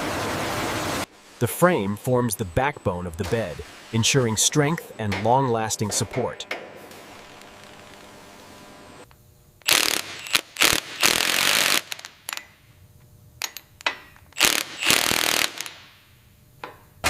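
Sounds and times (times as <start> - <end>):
power tool hissing rattling bursts: 9.6 - 12.3, 14.4 - 15.9.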